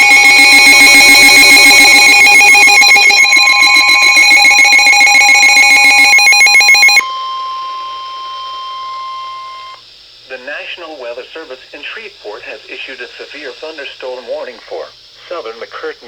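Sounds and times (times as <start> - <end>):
rapid trilling radio alarm: 0.0 - 14.2.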